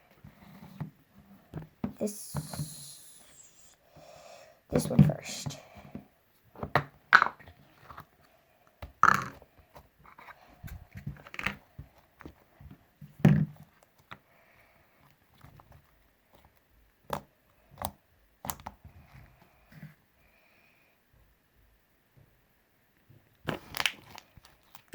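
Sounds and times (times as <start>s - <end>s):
slime squelching by hand: 23.4s - 24.9s.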